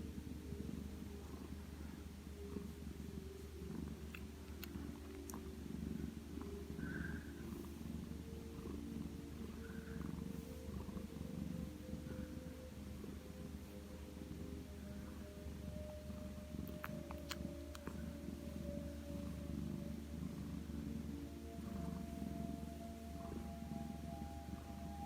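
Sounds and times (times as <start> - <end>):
cat purring: 0.0 - 25.0.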